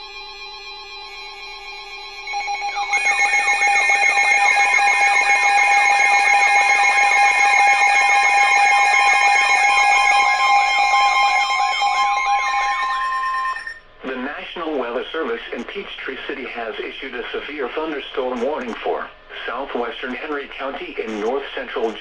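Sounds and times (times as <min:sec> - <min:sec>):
electronic alarm tone with warble: 0:00.0 - 0:13.9.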